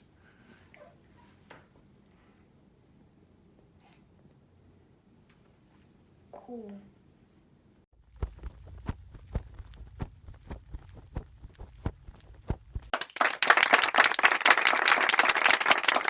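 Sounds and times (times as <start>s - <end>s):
crowd applauding: 12.9s - 16.0s.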